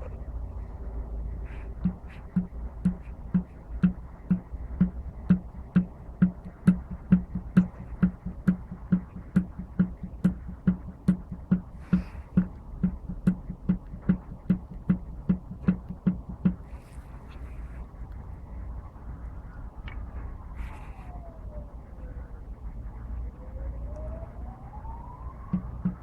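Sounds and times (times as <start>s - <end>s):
low engine rumble: 0.0s - 26.0s
motorcycle engine knocking: 1.8s - 16.8s, 25.5s - 26.0s.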